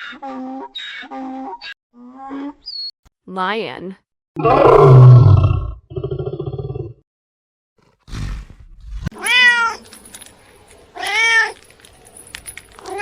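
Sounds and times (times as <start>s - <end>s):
cat meowing: 9.2s - 9.8s.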